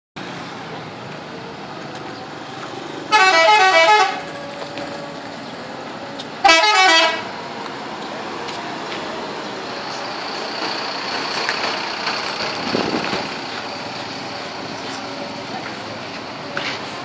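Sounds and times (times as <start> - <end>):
engine hum: 0.2 - 17.0
multi-tone musical air horn: 3.1 - 4.6, 6.4 - 7.3.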